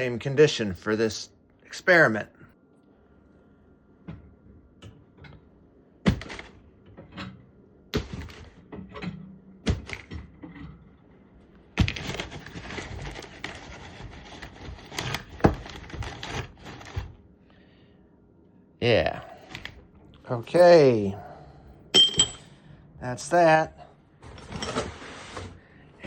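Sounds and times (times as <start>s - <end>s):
metal fittings knocking and clinking: 22.0s - 22.5s.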